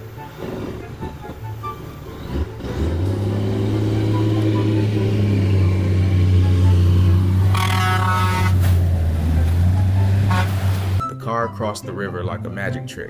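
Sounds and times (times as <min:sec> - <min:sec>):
vehicle engine under load: 0:00.8 - 0:11.0.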